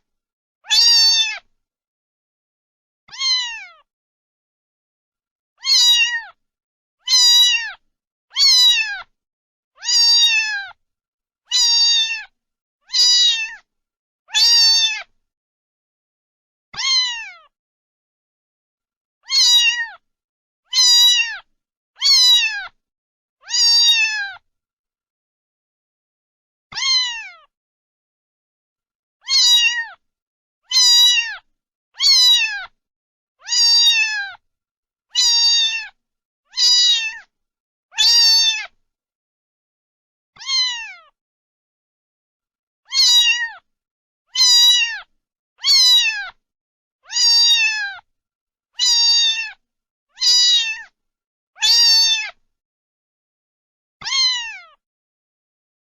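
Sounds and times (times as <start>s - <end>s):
cat meowing: 0.6s - 1.5s, 3.1s - 3.9s, 5.6s - 6.4s, 7.1s - 9.1s, 9.8s - 10.8s, 11.5s - 12.3s, 12.9s - 13.7s, 14.3s - 15.1s, 16.8s - 17.5s, 19.2s - 20.0s, 20.7s - 22.8s, 23.4s - 24.4s, 26.7s - 27.5s, 29.2s - 30.0s, 30.7s - 32.8s, 33.4s - 34.4s, 35.2s - 37.3s, 37.9s - 38.8s, 40.4s - 41.2s, 42.9s - 43.7s, 44.3s - 46.4s, 47.0s - 48.0s, 48.8s - 49.6s, 50.2s - 51.0s, 51.6s - 52.4s, 54.0s - 54.8s.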